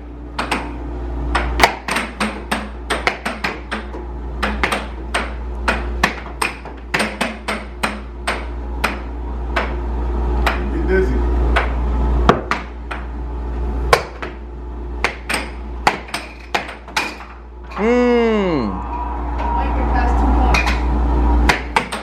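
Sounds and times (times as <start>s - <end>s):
steady low hum: 0.0s - 22.0s
air hockey puck hitting mallets: 1.3s - 9.8s, 13.9s - 14.4s, 15.0s - 17.4s, 20.5s - 22.0s.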